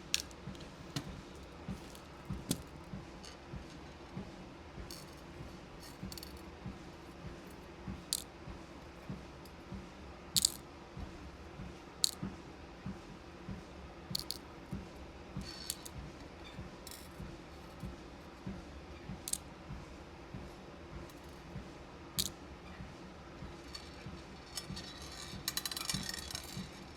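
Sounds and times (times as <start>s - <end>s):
plastic bead containers clicking: 0.0s - 1.1s, 1.7s - 2.8s, 4.9s - 6.4s, 10.4s - 10.6s, 14.2s - 14.4s, 15.5s - 16.0s, 24.6s - 26.8s.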